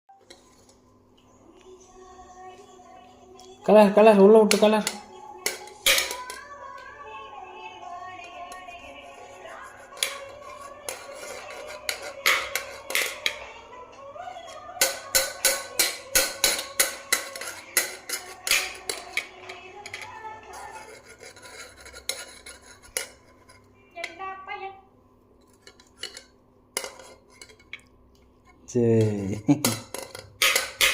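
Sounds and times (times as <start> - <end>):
utensils clinking against pot: 4.4 - 6.9, 8.4 - 13.4, 14.8 - 24.2, 25.4 - 27.9, 29.0 - 30.9.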